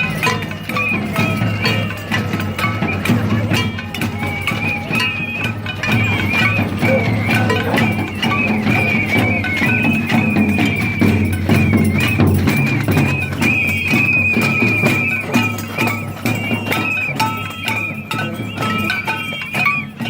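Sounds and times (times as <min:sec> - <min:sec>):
high shrill wavering tone: 0:00.0 - 0:20.0
percussion hits: 0:00.0 - 0:20.0.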